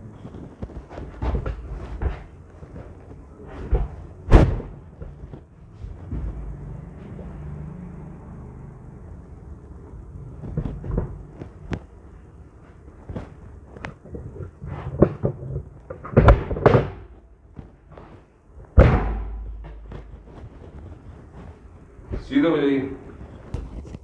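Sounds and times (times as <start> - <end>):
low hum: 0.0 - 24.0
loud sharp knock: 4.3 - 4.7, 18.8 - 20.0.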